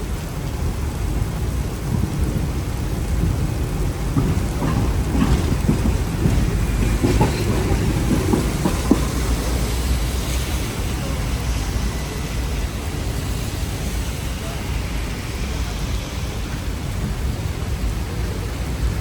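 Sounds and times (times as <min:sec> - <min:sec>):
tram rumbling on rails: 0:00.0 - 0:19.0.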